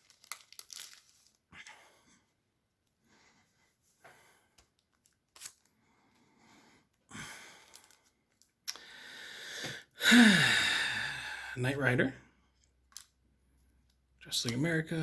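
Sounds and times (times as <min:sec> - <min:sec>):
cards rustling: 0:00.0 - 0:01.4, 0:04.6 - 0:05.8, 0:07.6 - 0:08.6
person sighing: 0:08.8 - 0:11.7.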